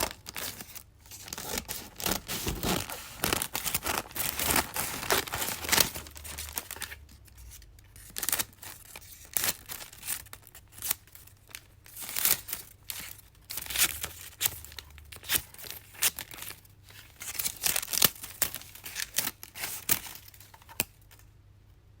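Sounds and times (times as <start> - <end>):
scissors cutting paper: 1.3 - 6.4.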